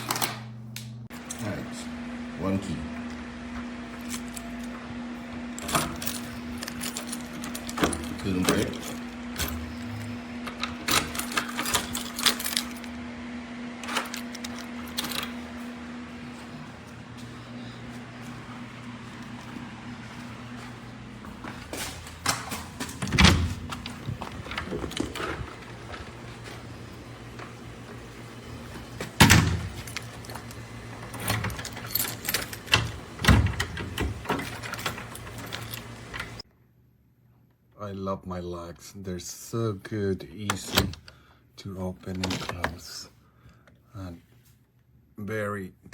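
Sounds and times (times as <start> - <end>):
low hum: 0.5 - 36.4
keys and lock parts clinking: 3.9 - 4.8, 5.5 - 13.0, 13.8 - 15.7, 16.3 - 36.4.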